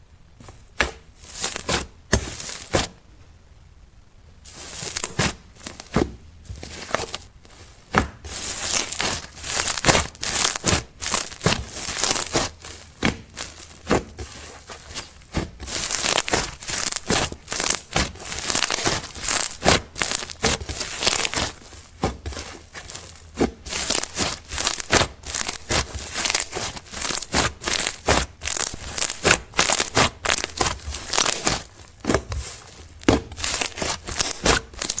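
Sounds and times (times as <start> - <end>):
slime crackling and popping: 7.8 - 14.0, 15.0 - 35.0.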